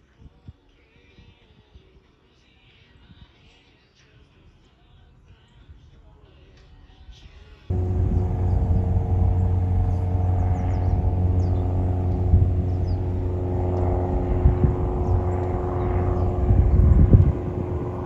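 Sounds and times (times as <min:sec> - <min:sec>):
low rumble: 0:07.7 - 0:18.0
mechanical hum: 0:07.7 - 0:18.0.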